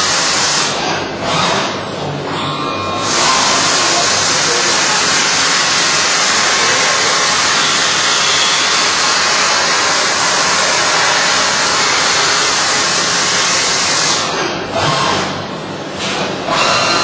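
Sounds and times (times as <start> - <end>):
machine rushing hiss: 3.0 - 14.2.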